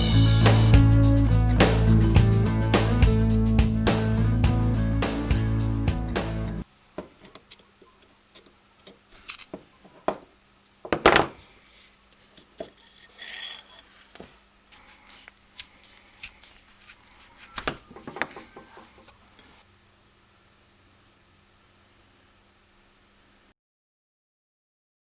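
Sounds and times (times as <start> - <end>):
squeaking ring: 12.7 - 13.9.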